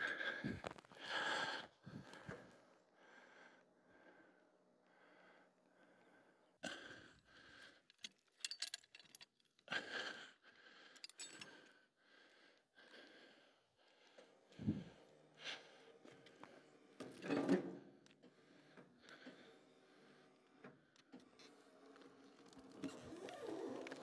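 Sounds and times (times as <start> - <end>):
person breathing: 0.0 - 7.9, 9.7 - 17.0, 18.2 - 20.8
metal rigging clinking and rattling: 7.9 - 9.6, 10.9 - 11.8.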